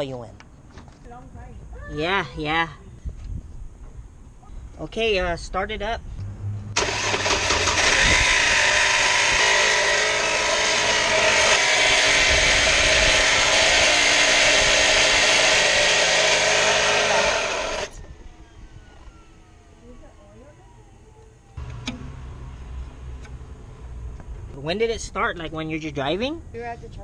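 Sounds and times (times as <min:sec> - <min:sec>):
car engine running: 0:06.2 - 0:09.5
grinding noise: 0:06.2 - 0:19.2.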